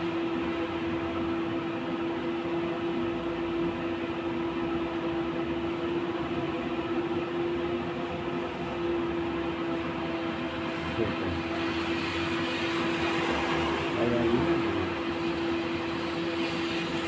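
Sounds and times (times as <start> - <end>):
tram running noise: 9.2 - 17.0.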